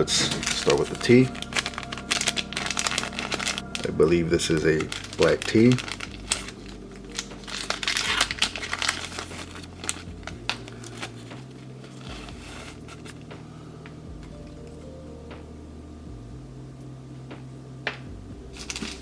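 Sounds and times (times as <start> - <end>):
wrapper crinkling and rustling: 0.0 - 14.0, 18.6 - 19.0.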